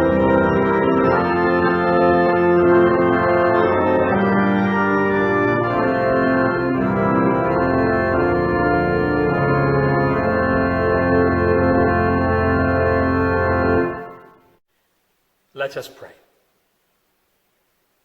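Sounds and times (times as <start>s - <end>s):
church organ playing a hymn: 0.0s - 14.4s.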